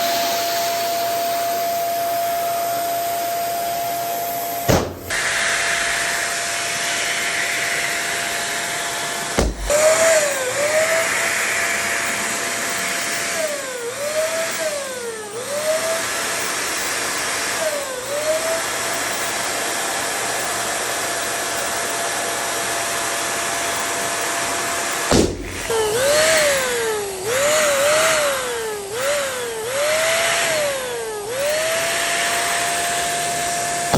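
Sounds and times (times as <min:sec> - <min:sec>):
electric air pump humming: 0:00.0 - 0:33.9
sharp bangs: 0:04.7 - 0:06.2, 0:09.4 - 0:10.3, 0:25.1 - 0:26.6.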